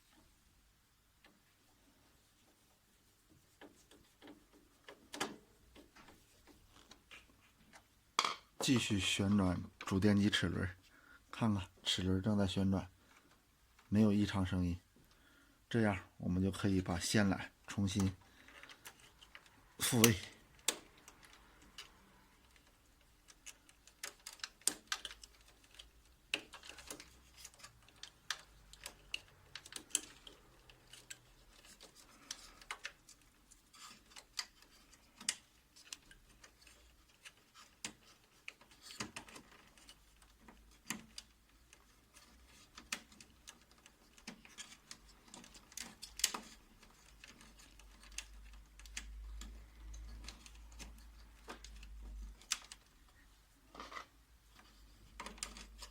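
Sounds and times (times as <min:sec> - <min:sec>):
light clicks and plastic taps: 0:16.5 - 0:55.9.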